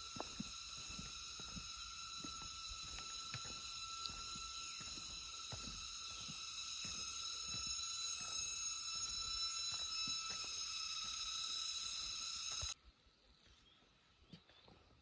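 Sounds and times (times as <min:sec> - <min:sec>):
footsteps on forest trail: 0:00.0 - 0:12.8
high-pitched whine: 0:00.0 - 0:12.8.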